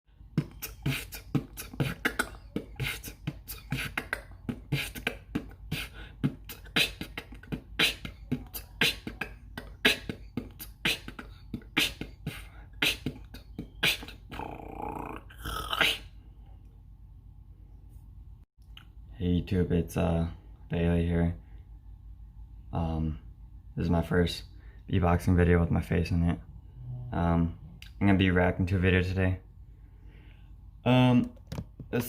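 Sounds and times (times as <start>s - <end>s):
vocal beatboxing: 0.2s - 16.1s
held wavering vocal sound: 0.4s - 16.2s.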